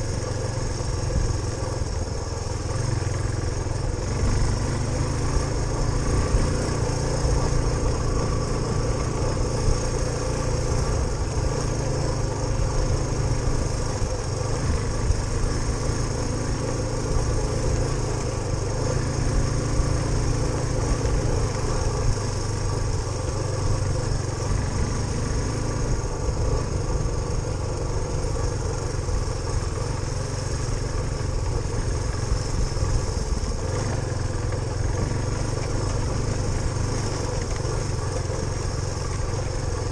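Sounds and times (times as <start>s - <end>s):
motorcycle engine running steadily: 0.0s - 39.9s.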